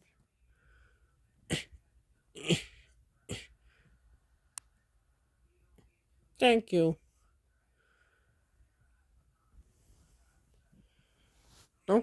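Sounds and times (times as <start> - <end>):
breathy sneeze-like bursts: 1.4 - 1.8, 2.4 - 3.7.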